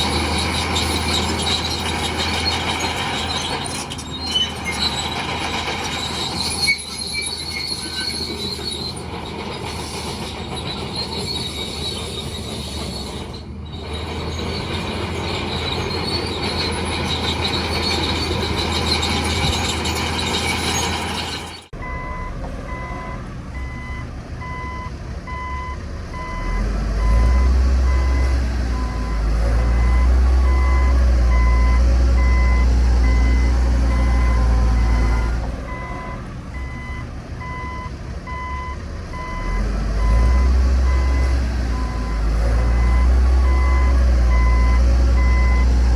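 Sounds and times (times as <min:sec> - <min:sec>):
crawler tracks squealing and grinding: 0:00.0 - 0:23.9, 0:24.5 - 0:45.9
diesel engine rumbling: 0:00.0 - 0:45.9
reversing alarm beeping: 0:21.8 - 0:45.8.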